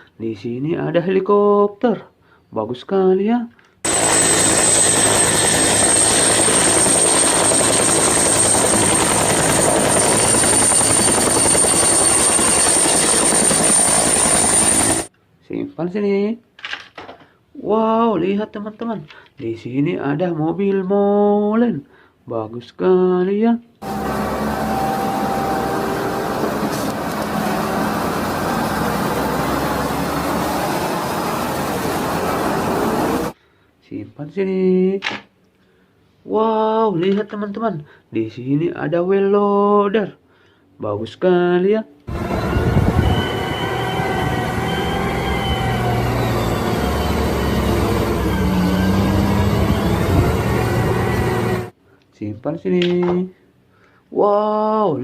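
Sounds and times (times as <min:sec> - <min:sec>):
helicopter rotor chop and whine: 0:03.9 - 0:15.1, 0:23.8 - 0:33.4, 0:42.1 - 0:51.7
truck engine running: 0:03.9 - 0:15.1, 0:23.8 - 0:33.3, 0:42.1 - 0:51.7.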